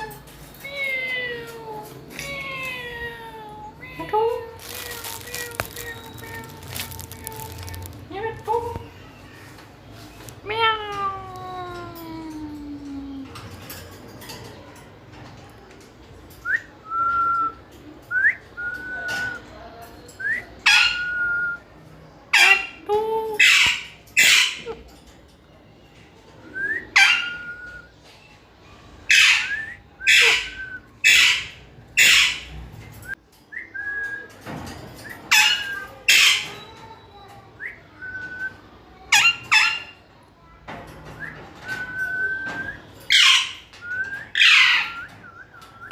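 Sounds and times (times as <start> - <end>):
parrot harsh screeches: 29.1 - 32.6.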